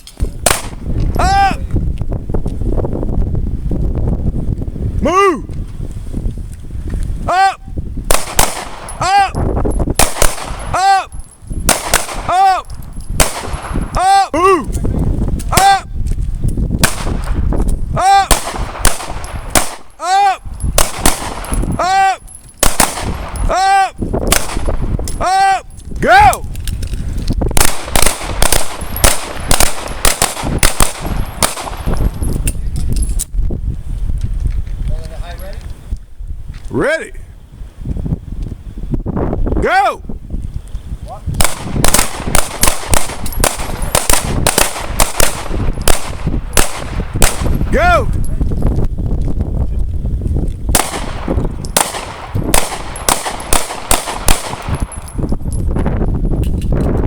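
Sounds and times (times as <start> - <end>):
pistol shots: 0.4 - 0.8, 8.1 - 9.2, 9.9 - 10.8, 11.7 - 12.5, 13.2 - 13.9, 16.8 - 17.4, 18.2 - 20.0, 20.8 - 21.7, 22.6 - 23.5, 24.3 - 24.9, 27.6 - 32.0, 41.4 - 47.7, 50.7 - 55.0.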